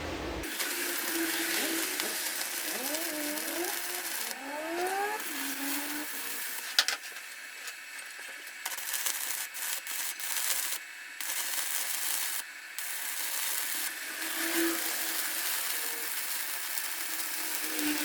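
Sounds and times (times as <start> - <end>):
abrasive rubbing hiss: 0.0 - 6.8, 13.9 - 18.0.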